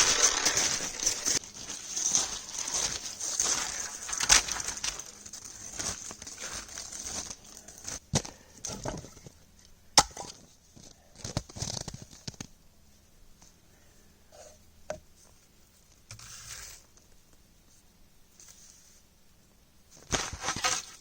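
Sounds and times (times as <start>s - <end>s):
crunching footsteps in snow: 0.0s - 8.0s.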